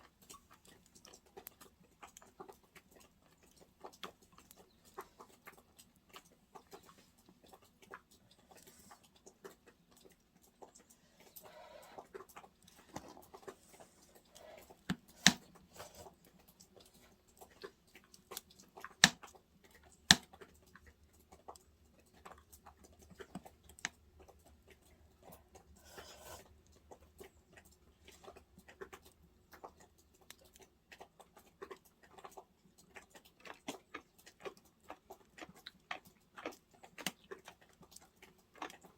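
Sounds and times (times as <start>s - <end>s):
wood fire crackling: 13.7s - 16.1s.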